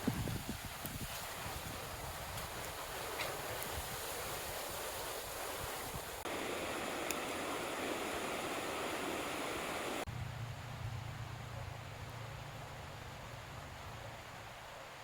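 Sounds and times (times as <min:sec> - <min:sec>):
mountain stream rushing: 0:01.2 - 0:10.1.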